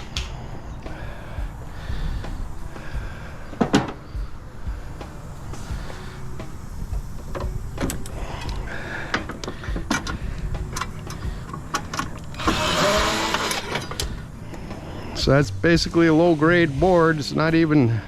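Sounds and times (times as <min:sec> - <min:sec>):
small power tool whirring: 0:05.5 - 0:14.3
metal parts clicking and knocking: 0:07.3 - 0:14.2.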